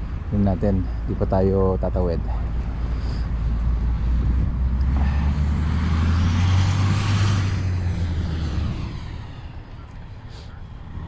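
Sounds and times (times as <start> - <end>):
low engine rumble: 0.0 - 11.0
vehicle tyre hiss: 2.8 - 3.5, 4.8 - 11.0.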